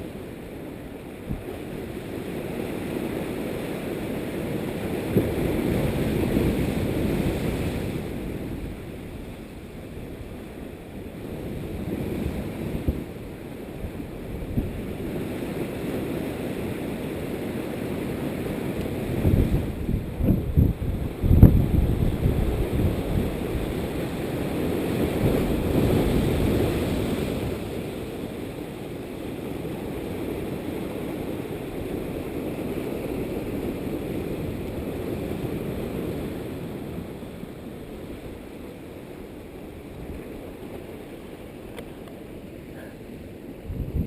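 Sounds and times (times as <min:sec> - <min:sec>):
wind buffeting microphone: 0:18.4 - 0:28.5, 0:43.5 - 0:44.0.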